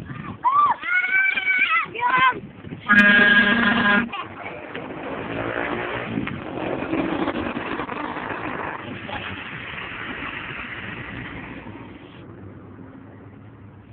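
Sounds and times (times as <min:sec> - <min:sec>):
voices: 0:00.0 - 0:04.9
road traffic noise: 0:02.4 - 0:13.9
bus engine: 0:02.9 - 0:13.9.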